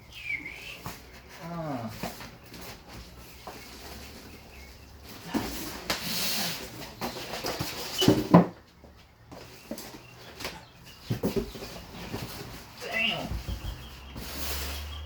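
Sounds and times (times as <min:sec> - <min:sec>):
cardboard scraping and rustling: 0:00.8 - 0:08.6, 0:09.3 - 0:15.0
box knocks and thump: 0:11.0 - 0:12.6, 0:13.2 - 0:14.4.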